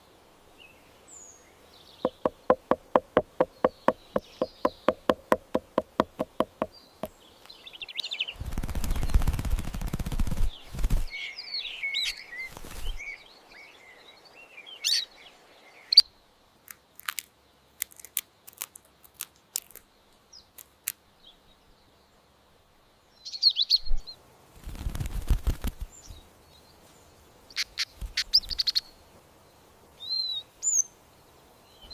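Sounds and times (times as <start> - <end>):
birds chirping: 0.6 - 16.1
rapid pulsed bird call: 2.0 - 7.2.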